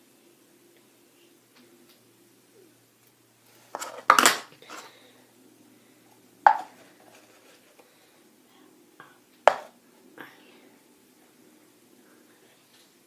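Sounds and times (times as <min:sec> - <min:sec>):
faint handling noise: 0:06.5 - 0:07.9.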